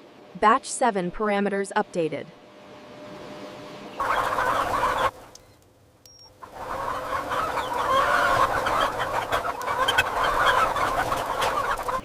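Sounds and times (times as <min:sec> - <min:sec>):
young chickens calling: 0:03.9 - 0:05.4, 0:06.3 - 0:12.0.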